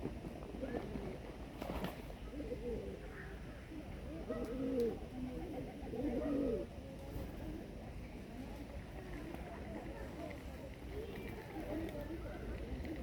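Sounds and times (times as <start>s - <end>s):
pigeons cooing: 2.2s - 3.2s, 4.1s - 6.7s.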